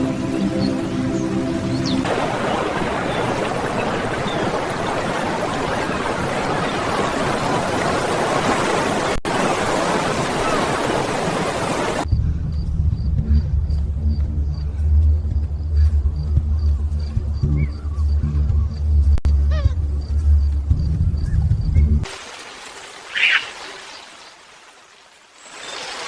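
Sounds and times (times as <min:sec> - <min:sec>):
music: 0:00.0 - 0:02.0, 0:12.1 - 0:22.1
surf washing on a beach: 0:02.0 - 0:12.0, 0:22.1 - 0:26.0.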